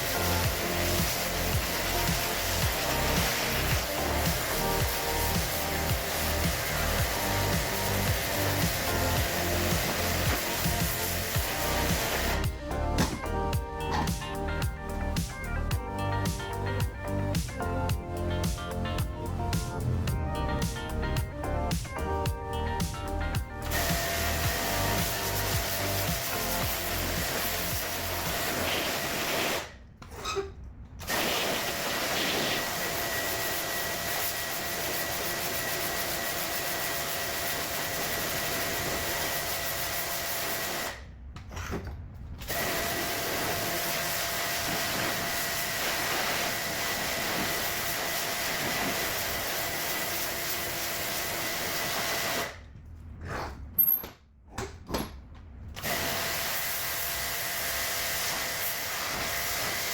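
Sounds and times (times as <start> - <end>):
small cleaning machine whining: 0.0 - 13.2, 23.6 - 29.7, 31.1 - 41.0, 42.5 - 52.6, 55.8 - 59.9.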